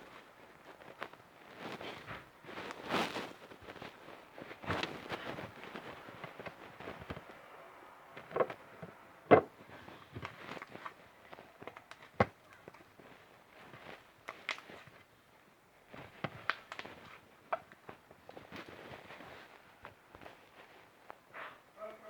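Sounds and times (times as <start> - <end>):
slime squishing with wet pops: 13.8 - 15.0, 16.0 - 18.4.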